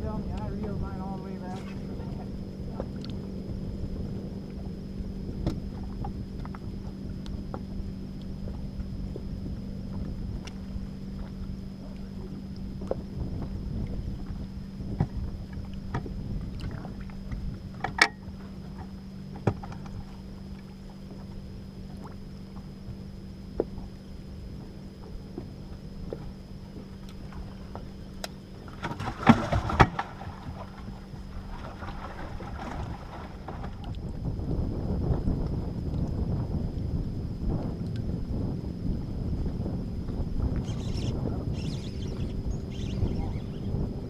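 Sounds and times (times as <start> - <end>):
small motor running: 40.6 - 43.8.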